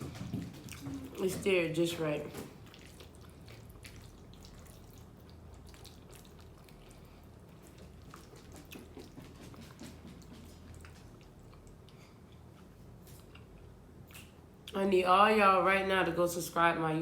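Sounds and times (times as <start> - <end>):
wet chewing mouth sounds: 2.4 - 14.8.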